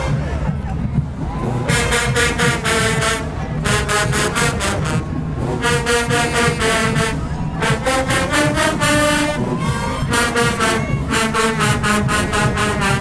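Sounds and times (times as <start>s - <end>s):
marching band brass and drums: 0.0s - 13.0s.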